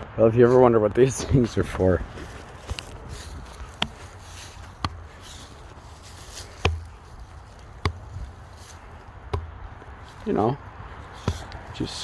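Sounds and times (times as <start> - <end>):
sharp knocks on wood: 6.6 - 7.0, 7.8 - 8.3, 9.3 - 9.7.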